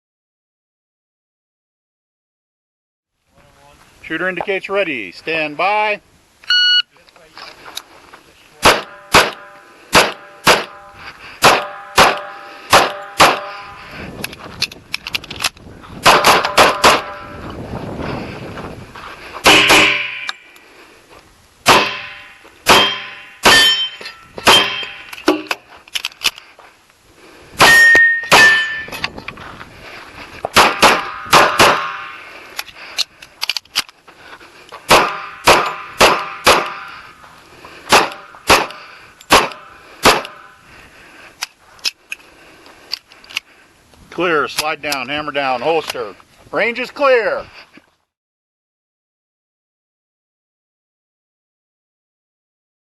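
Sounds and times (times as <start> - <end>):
pistol shots: 8.6 - 10.8, 11.4 - 13.6, 16.0 - 17.2, 19.5 - 20.3, 21.6 - 23.7, 24.4 - 25.5, 30.5 - 32.2, 34.9 - 36.9, 37.9 - 40.5
metallic ring: 21.9 - 25.5, 27.6 - 29.1.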